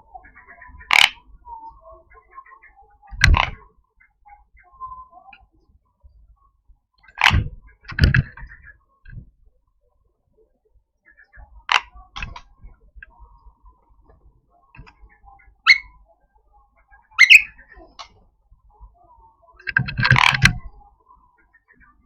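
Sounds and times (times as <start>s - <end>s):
bird giving harsh rasping calls: 15.7s - 15.9s, 17.2s - 17.6s.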